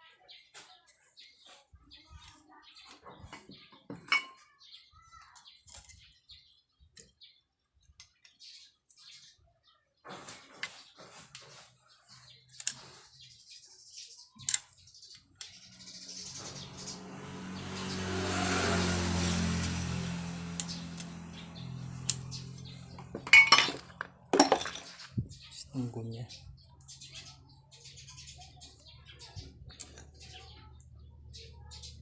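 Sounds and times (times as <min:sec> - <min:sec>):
vehicle engine passing by: 0:15.6 - 0:23.3
metallic clinks of tools: 0:23.2 - 0:25.0.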